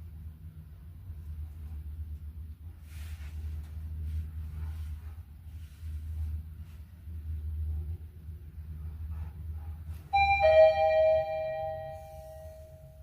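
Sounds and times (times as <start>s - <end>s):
low steady hum: 0.0s - 13.0s
elevator two-note chime: 10.1s - 13.0s.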